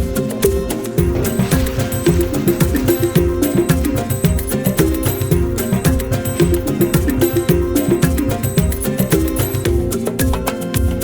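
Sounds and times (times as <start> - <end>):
folk or latin music with beat: 0.0 - 11.0.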